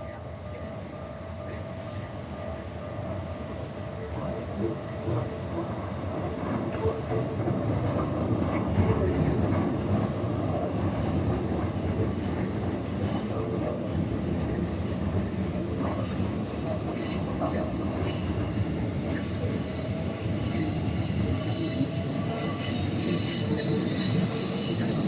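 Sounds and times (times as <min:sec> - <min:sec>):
train wheels clattering over rails: 0:07.4 - 0:25.0.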